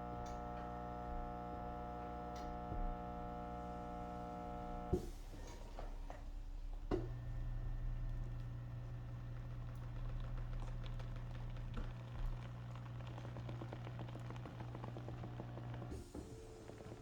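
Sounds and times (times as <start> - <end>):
massage chair low buzz: 0.0 - 5.2.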